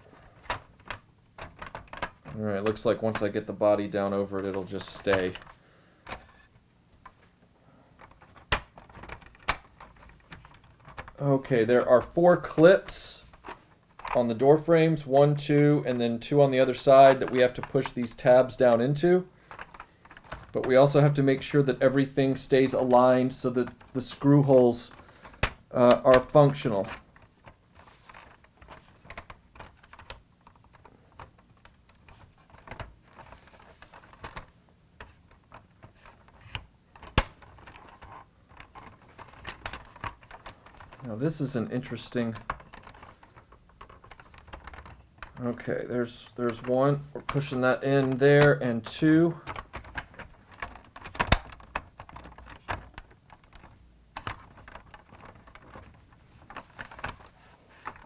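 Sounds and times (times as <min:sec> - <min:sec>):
plastic toy parts clicking: 0:00.3 - 0:03.3, 0:08.0 - 0:11.2, 0:22.4 - 0:45.4, 0:46.5 - 0:58.0.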